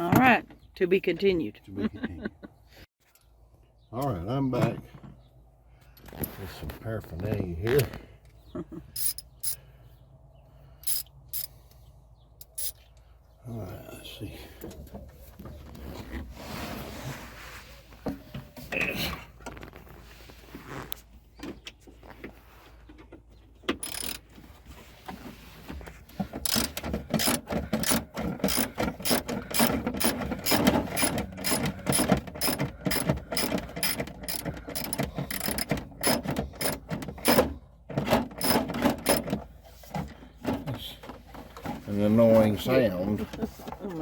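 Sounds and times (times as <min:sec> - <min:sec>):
fiddling with tools: 0:08.9 - 0:09.7, 0:10.8 - 0:11.8, 0:12.4 - 0:12.8, 0:23.0 - 0:41.8
ratchet clicking rapidly: 0:09.0 - 0:09.6, 0:10.8 - 0:11.5, 0:12.5 - 0:12.7, 0:23.8 - 0:24.2, 0:26.4 - 0:37.4, 0:38.4 - 0:39.2.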